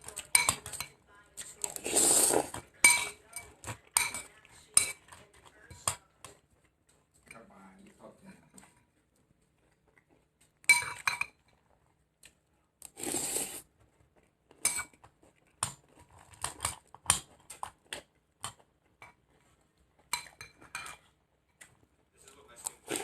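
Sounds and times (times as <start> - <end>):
spoon clinking against bowl: 0.1 - 1.0, 2.8 - 5.2, 10.7 - 11.4.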